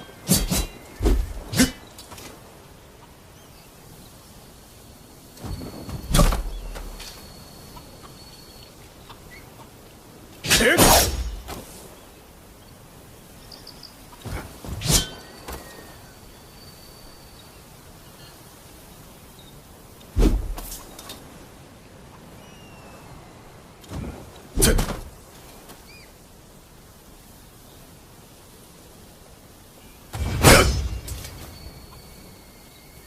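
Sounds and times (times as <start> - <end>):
faint bird chirps: 0.0 - 10.2, 11.1 - 20.1, 20.7 - 23.8, 25.7 - 26.3, 29.6 - 33.0
sword strikes: 10.5 - 11.5, 30.2 - 31.3
sword whooshing: 14.7 - 15.3.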